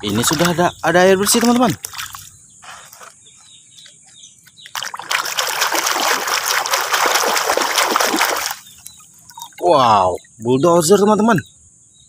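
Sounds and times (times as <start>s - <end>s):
water splashing and pouring: 0.0s - 2.3s, 4.6s - 9.7s.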